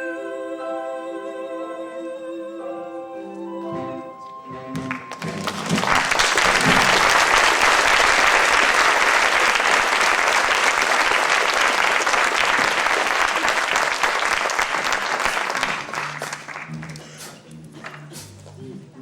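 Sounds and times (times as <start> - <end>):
audience applauding: 4.8 - 17.2.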